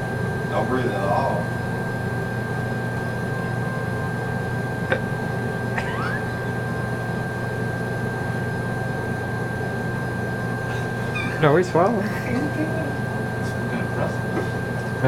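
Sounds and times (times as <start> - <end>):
mechanical hum and hiss: 0.0 - 15.0
short rising squeak: 10.7 - 11.5.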